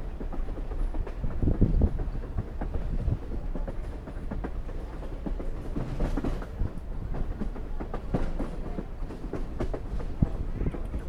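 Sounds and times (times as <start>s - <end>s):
train wheels rumbling on rails: 0.0s - 11.0s.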